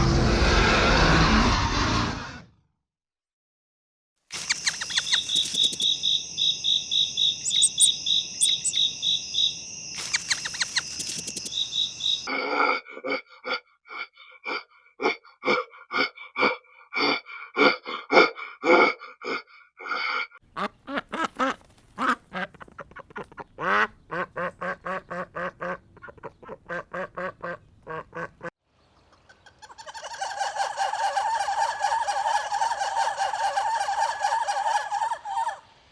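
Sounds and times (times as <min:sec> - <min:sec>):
high-pitched chick peeping: 0:04.4 - 0:12.3
ducks quacking: 0:07.4 - 0:08.8.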